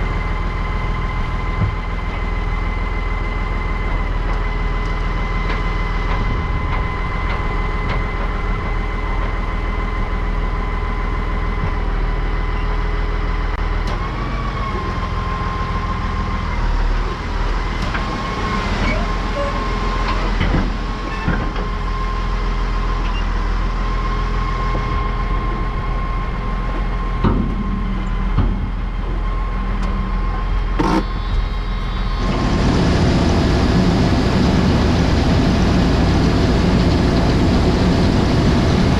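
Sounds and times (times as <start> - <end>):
tractor engine running: 0.0 - 38.9
high whine: 29.5 - 38.9.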